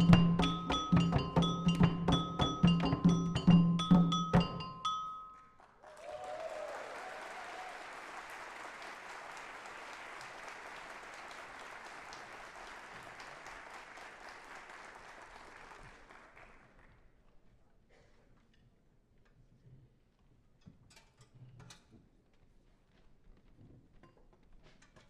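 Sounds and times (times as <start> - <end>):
percussion notes ringing: 0.0 - 5.6
audience applauding: 5.7 - 17.0.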